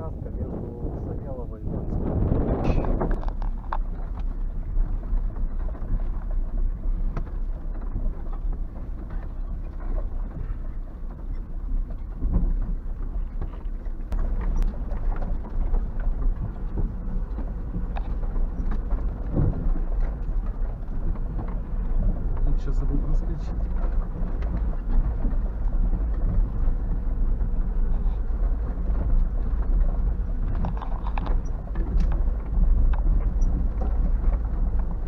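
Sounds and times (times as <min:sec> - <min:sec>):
car driving rumble: 0:00.0 - 0:35.0
knocks and rattles: 0:01.7 - 0:35.0.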